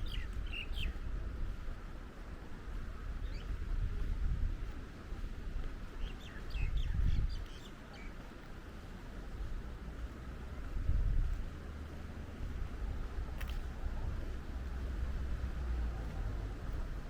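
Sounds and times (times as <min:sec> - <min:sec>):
small birds chirping: 0:00.0 - 0:01.1, 0:03.1 - 0:03.7, 0:05.9 - 0:08.4
wind rumble on microphone: 0:00.0 - 0:17.0.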